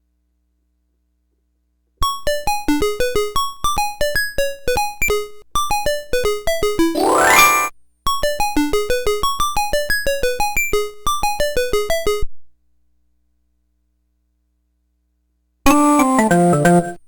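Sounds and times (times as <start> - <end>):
electronic toy synth melody: 6.2 - 7.7
rising synth sweep: 7.0 - 7.7.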